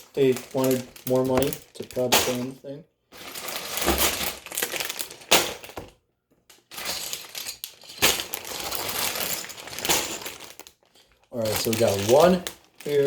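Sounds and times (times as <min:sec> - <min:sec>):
plastic bricks rattling: 0:00.0 - 0:02.5, 0:06.7 - 0:13.0
plastic bags crinkling: 0:00.0 - 0:02.6, 0:03.2 - 0:06.0, 0:06.6 - 0:13.0.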